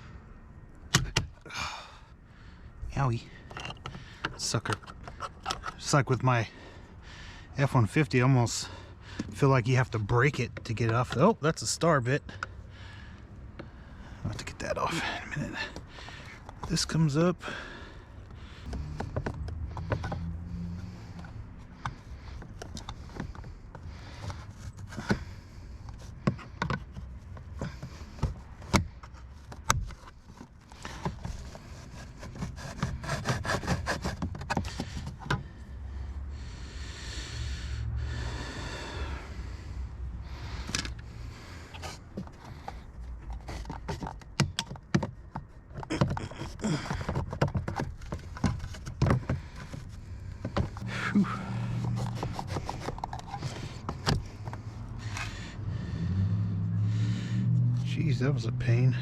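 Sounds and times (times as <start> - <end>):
plastic scraping and rubbing: 18.6 - 35.4, 41.5 - 55.3.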